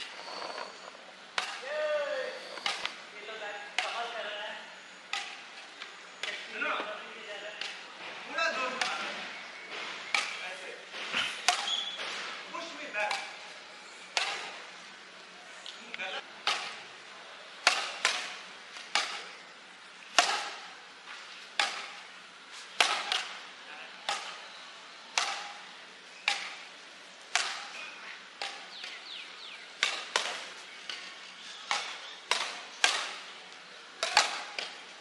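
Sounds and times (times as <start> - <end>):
racket hitting shuttlecock: 1.3 - 3.0, 3.7 - 4.2, 5.1 - 5.4, 10.0 - 10.4, 11.4 - 12.3, 14.1 - 14.6, 16.4 - 16.8, 17.6 - 19.4, 20.1 - 20.7, 21.6 - 22.0, 22.7 - 23.4, 24.0 - 24.4, 25.1 - 26.7, 27.3 - 27.8, 29.7 - 33.3, 33.9 - 34.9.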